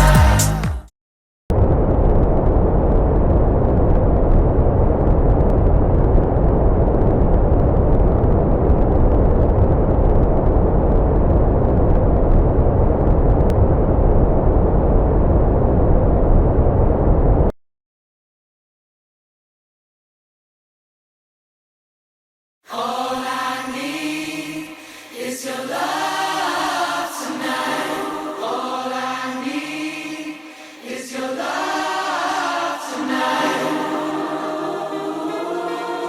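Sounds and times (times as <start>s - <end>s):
song: 0.0s - 0.9s, 31.4s - 36.0s.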